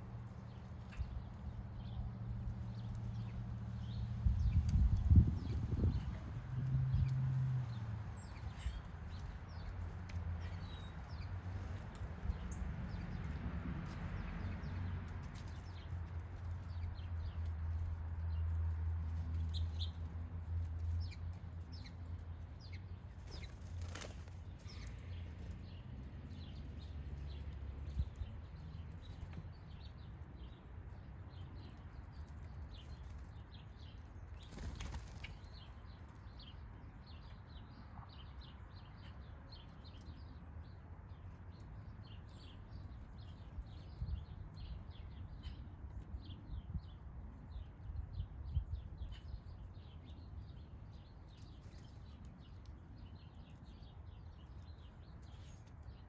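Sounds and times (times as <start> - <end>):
bird wing flutters: 23.2 - 24.8, 34.4 - 35.4.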